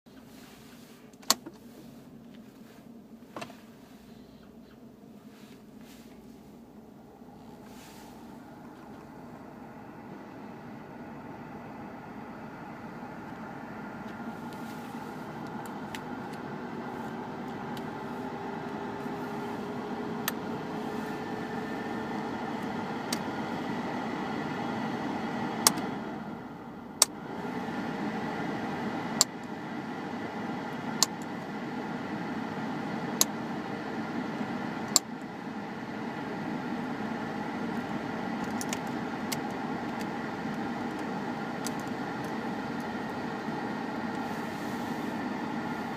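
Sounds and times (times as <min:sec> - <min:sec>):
car engine hum: 0:00.1 - 0:45.9
air conditioner switch clicks: 0:25.6 - 0:25.9, 0:34.8 - 0:35.3.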